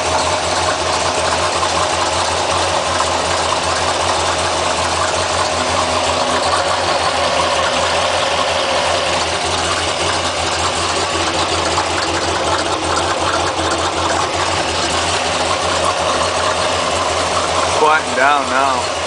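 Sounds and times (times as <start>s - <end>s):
engine idling with grinding hum: 0.0s - 19.0s.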